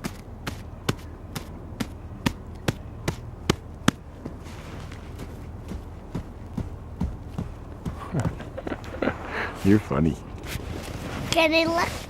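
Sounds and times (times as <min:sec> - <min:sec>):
trailer rocking sharp knocks: 0:00.0 - 0:09.2.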